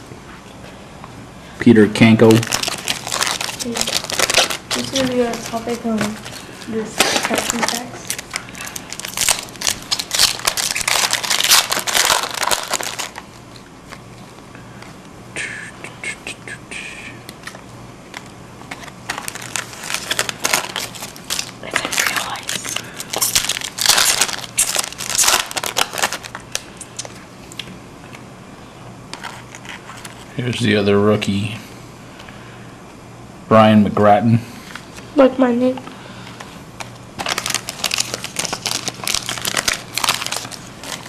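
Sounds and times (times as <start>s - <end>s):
wrapper crinkling and crackling: 2.0s - 14.1s, 17.4s - 27.6s, 29.1s - 30.3s, 36.8s - 41.0s.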